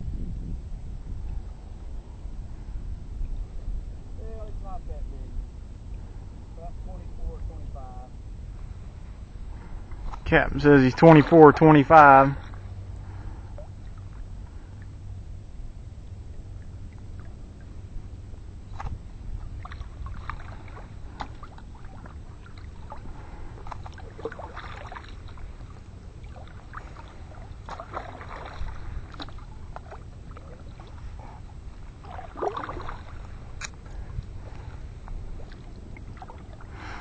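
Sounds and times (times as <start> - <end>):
low steady rumble: 0.0 - 37.0
water lapping against a kayak: 0.8 - 37.0.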